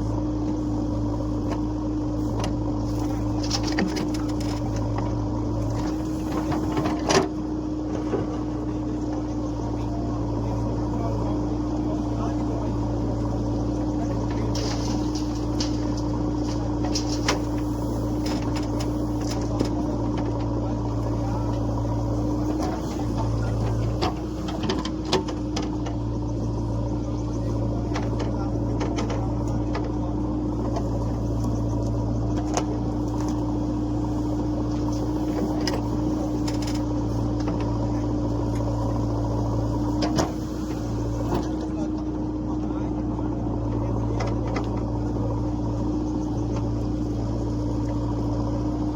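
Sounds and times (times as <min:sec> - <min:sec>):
diesel engine running: 0:00.0 - 0:48.9.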